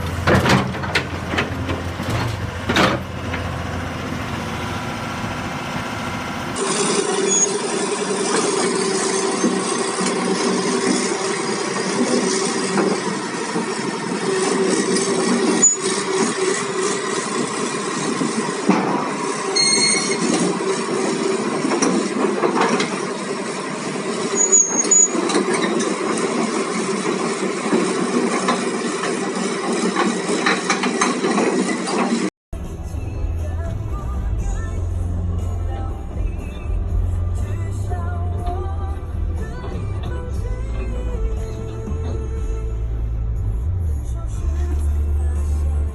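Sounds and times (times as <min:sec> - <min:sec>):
excavator diesel engine drone: 0:00.0 - 0:45.9
metal squeaks: 0:06.6 - 0:17.2, 0:19.4 - 0:23.2, 0:24.2 - 0:26.8.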